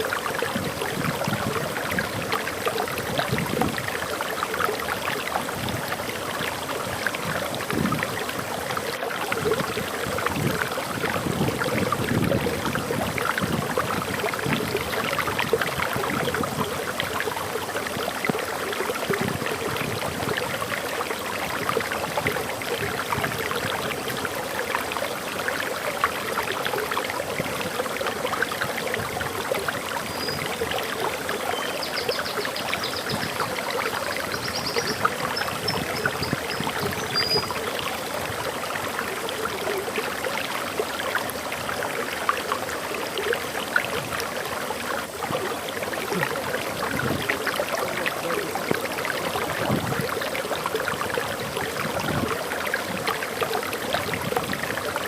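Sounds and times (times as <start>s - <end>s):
waterfall rushing and splashing: 0.0s - 55.0s
bird chirping and trilling: 30.1s - 30.4s, 31.5s - 33.4s, 34.1s - 37.6s.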